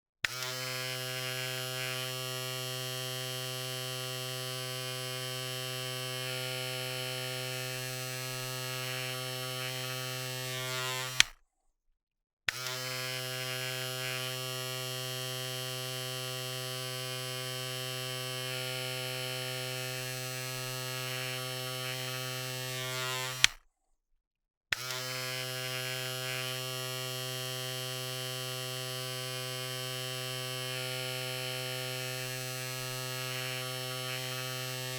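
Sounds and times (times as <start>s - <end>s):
electric razor buzzing: 0.3s - 11.3s, 12.5s - 23.6s, 24.8s - 34.9s
razor switch click: 11.0s - 11.4s, 23.2s - 23.6s.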